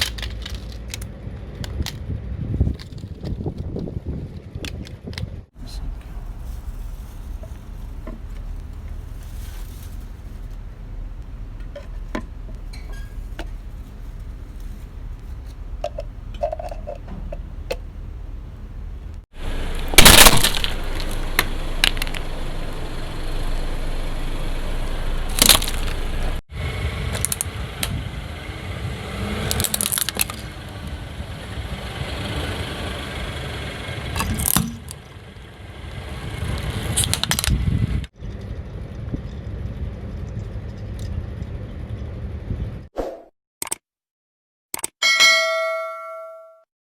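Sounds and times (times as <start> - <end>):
car rumble: 0.0 - 42.9
tyres crushing objects: 19.6 - 22.3, 25.3 - 26.0.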